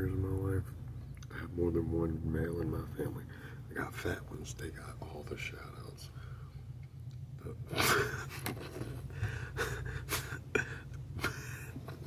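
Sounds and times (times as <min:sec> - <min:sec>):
steady low hum: 0:00.0 - 0:12.0
man breathing hard: 0:09.1 - 0:11.8.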